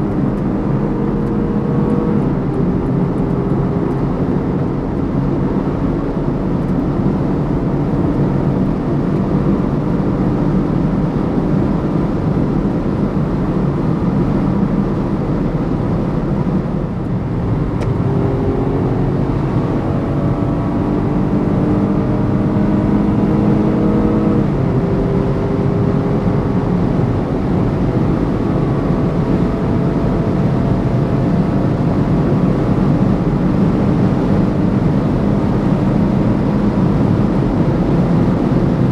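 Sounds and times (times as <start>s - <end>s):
car engine at high speed: 0.0s - 17.2s
road and wind noise: 0.0s - 38.9s.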